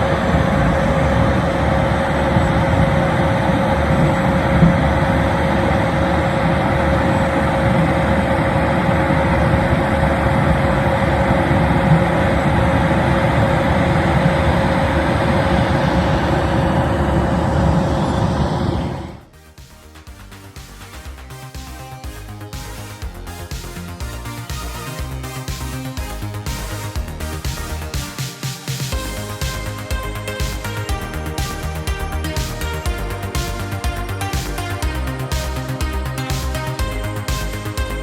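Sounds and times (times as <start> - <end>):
harvester machine running: 0.0 - 19.3.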